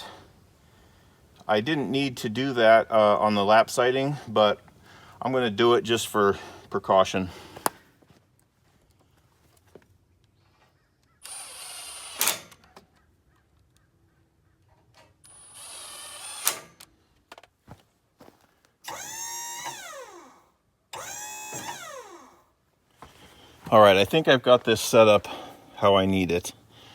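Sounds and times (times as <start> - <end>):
power drill driving screws: 11.2 - 12.6, 15.2 - 16.9, 18.8 - 22.5.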